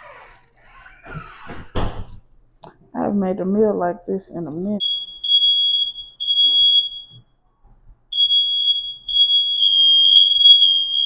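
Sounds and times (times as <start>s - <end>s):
smoke alarm high-pitched tone: 4.8s - 7.2s, 8.1s - 11.0s.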